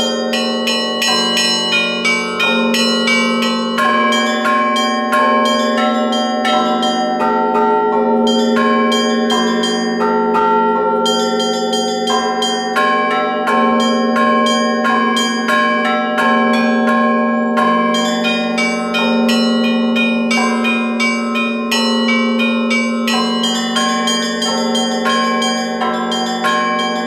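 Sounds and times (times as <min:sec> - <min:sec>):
large bell humming: 0:00.0 - 0:27.0
small church bells pealing: 0:00.0 - 0:27.0.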